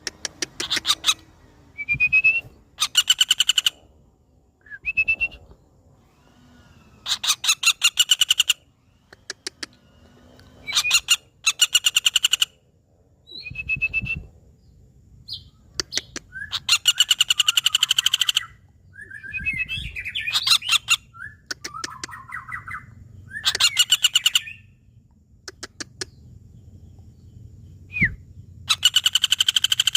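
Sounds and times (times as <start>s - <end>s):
woodpecker rattling calls: 0.0s - 1.4s, 2.8s - 3.9s, 6.0s - 12.6s, 15.3s - 18.6s, 20.0s - 22.8s, 23.4s - 24.7s, 28.7s - 29.9s
short squeaky calls: 0.0s - 3.8s, 5.0s - 12.5s, 28.7s - 29.9s.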